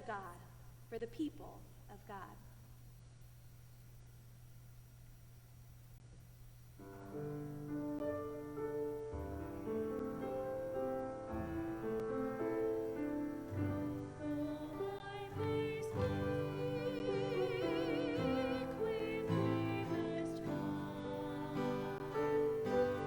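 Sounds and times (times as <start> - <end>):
faint steady hum: 0.0 - 23.0
slow keyboard chords: 6.8 - 23.0.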